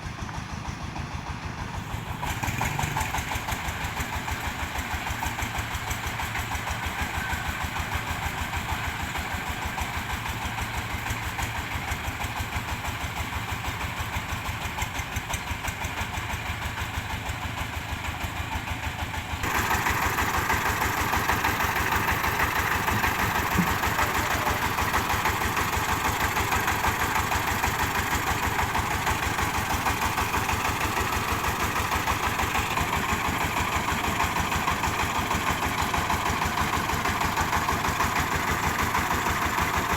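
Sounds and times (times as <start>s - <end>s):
diesel engine running: 0.0s - 39.9s
rushing machine noise: 19.4s - 32.6s.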